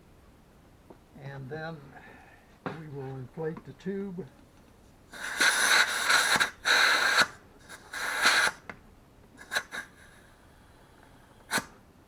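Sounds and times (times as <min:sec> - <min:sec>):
air hissing into inner tube: 0:05.1 - 0:08.6, 0:09.4 - 0:10.5, 0:11.4 - 0:11.8.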